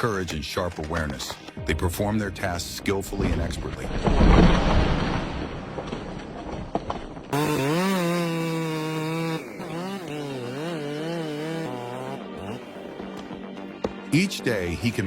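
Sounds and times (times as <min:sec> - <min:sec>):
noisy crackling: 0:02.7 - 0:10.6
chainsaw engine running: 0:07.3 - 0:12.9.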